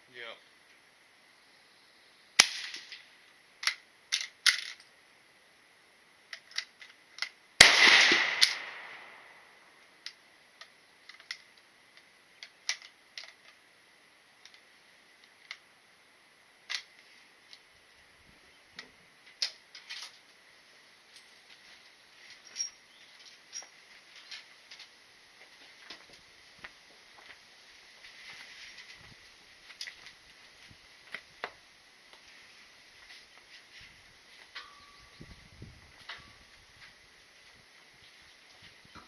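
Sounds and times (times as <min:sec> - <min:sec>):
gunshots with echo: 0:07.6 - 0:09.3
small clicks and knocks: 0:10.0 - 0:13.6.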